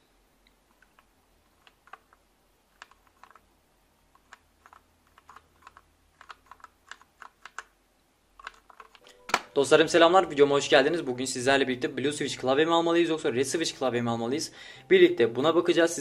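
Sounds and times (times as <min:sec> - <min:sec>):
faint mechanical keyboard typing: 0:00.7 - 0:03.4, 0:04.1 - 0:07.7, 0:08.4 - 0:09.2.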